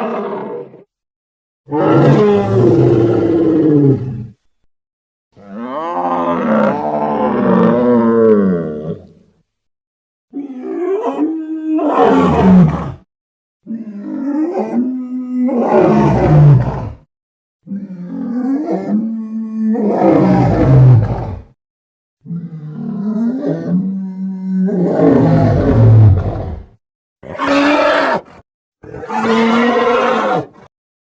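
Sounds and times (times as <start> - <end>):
creature roar: 1.7 - 4.3, 5.4 - 9.0, 10.4 - 13.1, 13.7 - 17.1, 17.7 - 21.5, 22.2 - 30.7.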